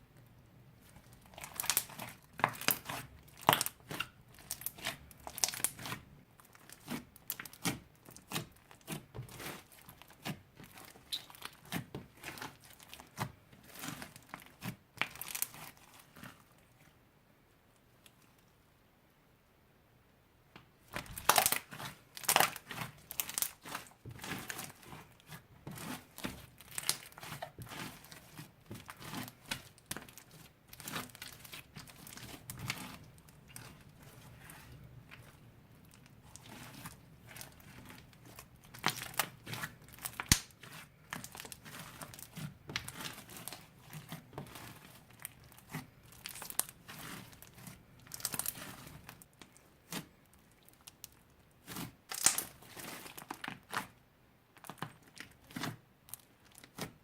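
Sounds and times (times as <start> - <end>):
slime popping: 20.9 - 24.8, 38.6 - 43.6
slime crackling and clicking: 21.0 - 23.9, 37.3 - 48.7, 52.1 - 52.5.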